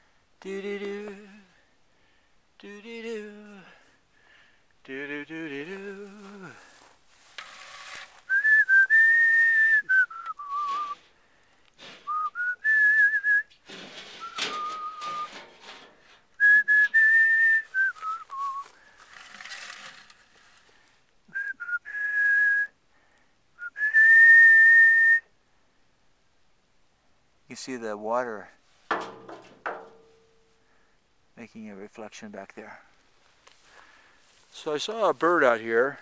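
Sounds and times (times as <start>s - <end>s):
man whistling a tune: 8.3s - 11.0s, 12.1s - 13.5s, 14.2s - 15.3s, 16.4s - 18.7s, 21.3s - 22.8s, 23.6s - 25.3s.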